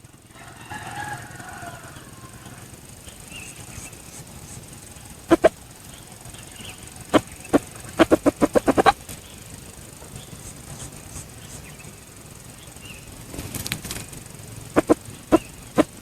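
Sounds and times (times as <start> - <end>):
faint rustle: 0.3 - 16.0
junglefowl short sharp calls: 5.3 - 5.6, 7.1 - 9.0, 14.8 - 16.0.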